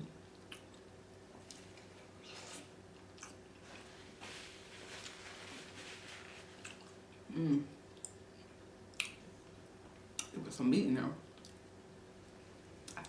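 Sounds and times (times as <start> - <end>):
person humming: 7.3 - 7.8
wet chewing and lip-smacking: 7.9 - 9.3, 11.3 - 11.6.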